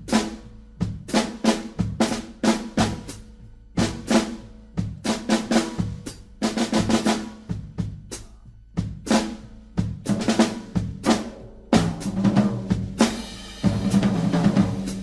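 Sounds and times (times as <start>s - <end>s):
snare and bass drum hits: 9.0s - 15.0s.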